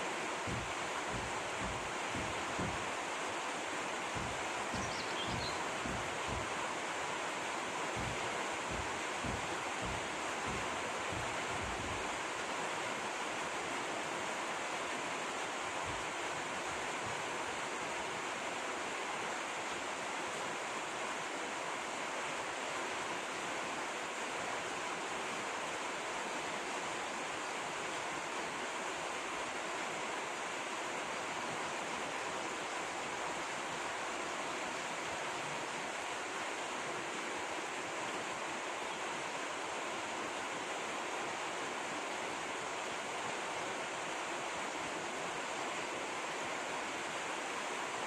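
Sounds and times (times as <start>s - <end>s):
flowing water rushing: 0.0s - 48.0s.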